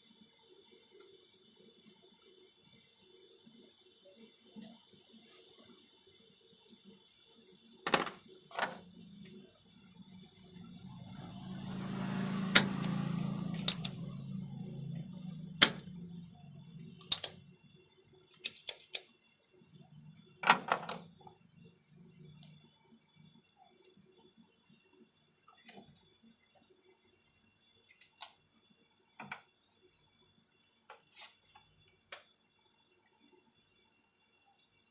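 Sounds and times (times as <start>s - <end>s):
low hum: 8.5s - 17.8s.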